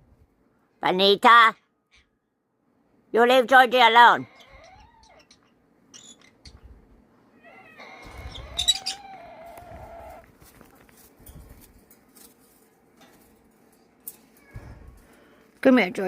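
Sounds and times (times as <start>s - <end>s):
animal drawn-out cry: 7.3s - 10.2s.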